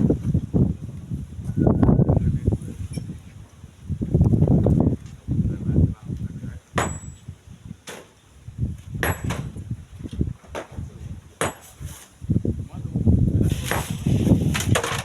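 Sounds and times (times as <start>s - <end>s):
wind buffeting microphone: 0.0s - 15.0s
sharp knocks: 6.8s - 7.2s, 9.0s - 9.6s, 11.4s - 11.8s.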